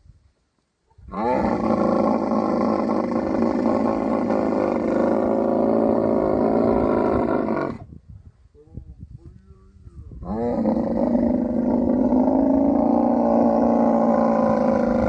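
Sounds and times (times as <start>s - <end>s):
camel roaring: 1.1s - 7.8s, 10.2s - 15.0s.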